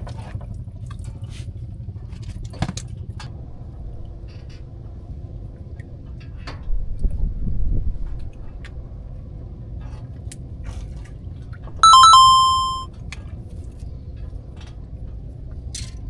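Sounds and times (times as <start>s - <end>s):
small metal bell chime: 11.8s - 12.9s.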